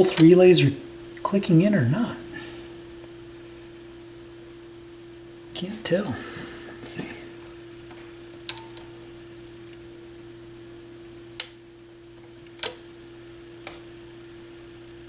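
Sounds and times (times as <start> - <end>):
amplifier relay clicks: 0.0 - 1.3, 7.4 - 9.0, 11.3 - 13.0, 13.6 - 13.9
steady low hum: 0.0 - 15.0.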